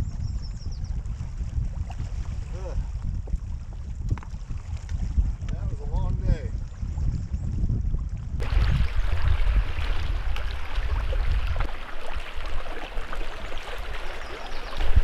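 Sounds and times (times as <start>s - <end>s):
wind rumbling on microphone: 0.0s - 15.0s
water splashing and lapping: 1.1s - 5.4s, 8.4s - 15.0s
water drips and plops: 8.4s - 15.0s.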